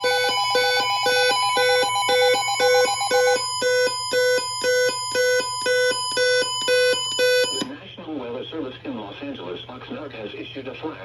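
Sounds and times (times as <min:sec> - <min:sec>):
electronic alert tone beeping: 0:00.0 - 0:07.7.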